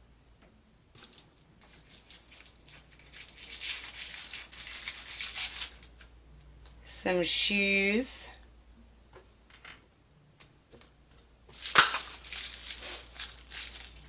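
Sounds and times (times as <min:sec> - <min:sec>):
plastic wrapper crinkling: 0:00.9 - 0:06.2, 0:10.7 - 0:14.0.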